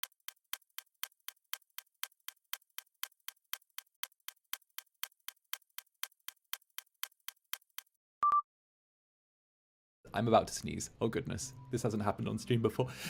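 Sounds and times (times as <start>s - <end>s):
clock ticking: 0.0s - 7.9s.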